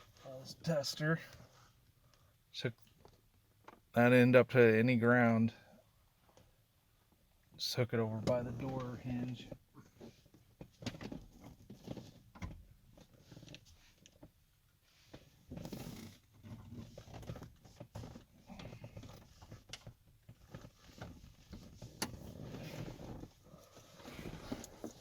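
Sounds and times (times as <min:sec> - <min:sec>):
rustling: 0:14.8 - 0:25.0.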